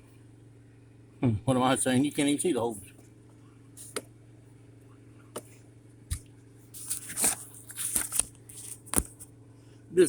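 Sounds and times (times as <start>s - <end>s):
steady low hum: 0.0s - 10.0s
rustling and scraping of small parts: 6.7s - 9.3s.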